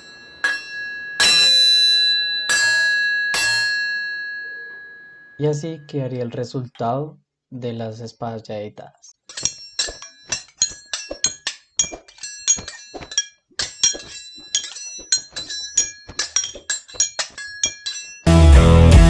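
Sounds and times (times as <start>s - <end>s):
hammer striking metal clangs: 0.0s - 5.4s, 9.3s - 18.4s.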